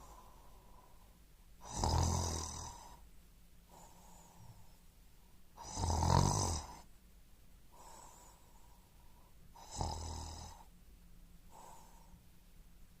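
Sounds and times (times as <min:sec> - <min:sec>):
soft breaths: 0:00.0 - 0:05.7, 0:07.6 - 0:13.0
person snoring: 0:01.6 - 0:03.0, 0:05.6 - 0:06.9, 0:09.6 - 0:10.7.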